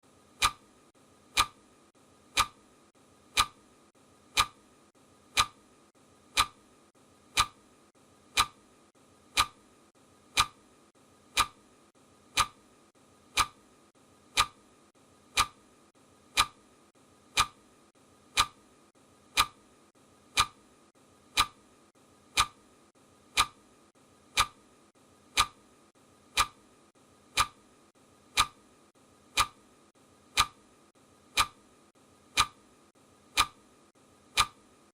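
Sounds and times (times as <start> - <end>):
clock ticking: 0.3 - 1.6, 2.3 - 2.6, 3.3 - 3.6, 4.3 - 4.6, 5.3 - 5.6, 6.3 - 6.6, 7.3 - 7.6, 8.3 - 8.6, 9.3 - 9.6, 10.3 - 10.6, 11.3 - 11.6, 12.3 - 12.6, 13.3 - 13.6, 14.3 - 14.6, 15.3 - 15.6, 16.3 - 16.6, 17.3 - 17.6, 18.3 - 18.6, 19.3 - 19.6, 20.3 - 20.6, 21.3 - 21.6, 22.3 - 22.6, 23.3 - 23.6, 24.3 - 24.6, 25.3 - 25.6, 26.3 - 26.6, 27.3 - 27.6, 28.3 - 28.6, 29.3 - 29.6, 30.3 - 30.6, 31.3 - 31.6, 32.3 - 32.6, 33.3 - 33.6, 34.3 - 34.7.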